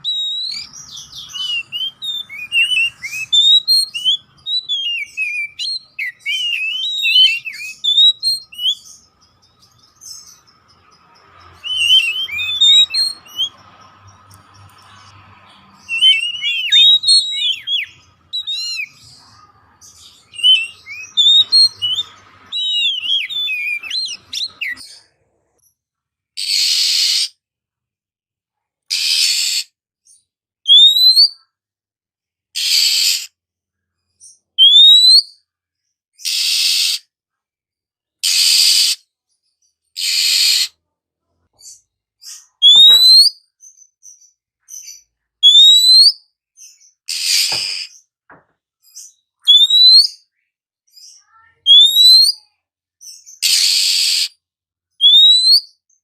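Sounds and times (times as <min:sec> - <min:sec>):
bird singing whistles and chirps: 0:00.0 - 0:25.0, 0:29.1 - 0:31.4, 0:34.2 - 0:35.4, 0:41.6 - 0:48.1, 0:48.8 - 0:56.0.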